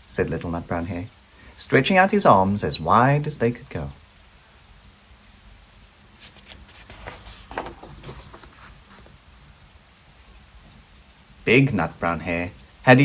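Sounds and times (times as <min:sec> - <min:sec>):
crickets chirping: 0:00.0 - 0:13.0
faint soft rustles: 0:05.5 - 0:09.6.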